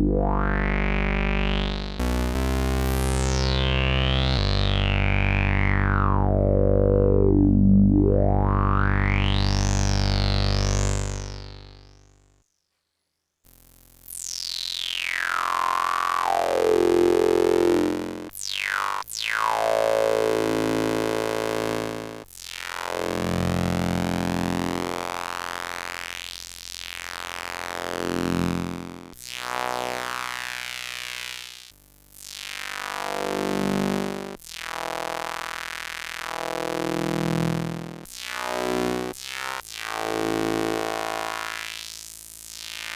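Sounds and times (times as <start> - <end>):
synthesizer sustained notes: 0.0 - 11.6.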